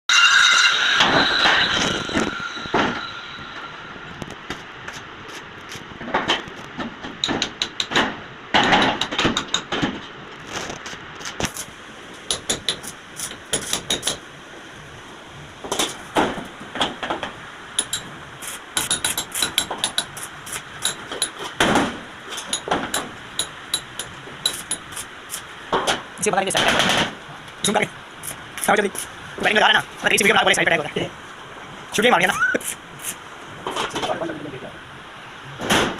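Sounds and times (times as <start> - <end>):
hammering on steel: 7.2 - 9.8, 12.2 - 14.2, 17.8 - 18.1, 18.8 - 25.0.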